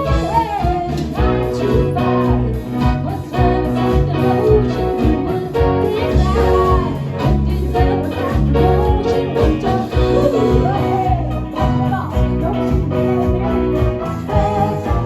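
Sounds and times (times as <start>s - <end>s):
live band playing: 0.0s - 15.0s
person singing: 0.0s - 15.0s
pulsing bass line: 0.0s - 15.0s.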